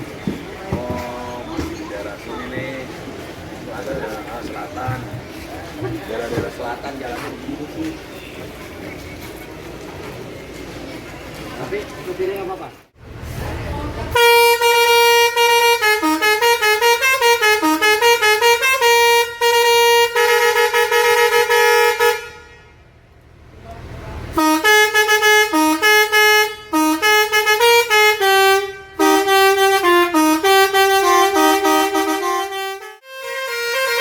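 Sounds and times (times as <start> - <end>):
air horn playing a tune: 14.1 - 22.8, 24.3 - 34.0.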